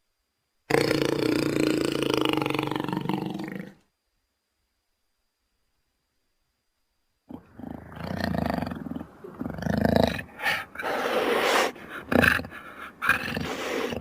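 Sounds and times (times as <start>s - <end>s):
jaguar growling and snarling: 0.7s - 3.8s, 7.3s - 14.0s.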